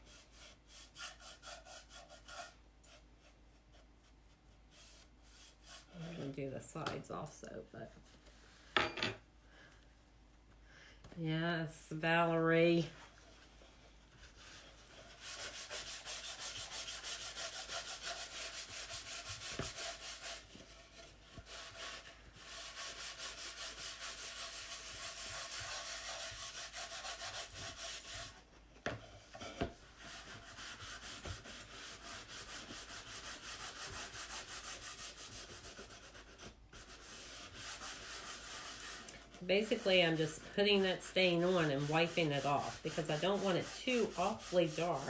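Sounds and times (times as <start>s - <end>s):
cloth wiping wooden board: 13.0s - 28.4s, 30.0s - 45.0s.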